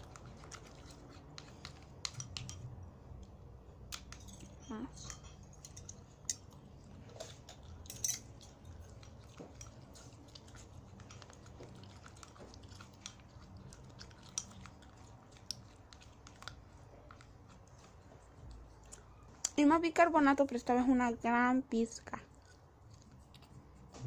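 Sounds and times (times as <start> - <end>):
spoon scraping a bowl: 0.0 - 2.8, 3.9 - 18.2
spoon stirring slime: 0.0 - 24.0.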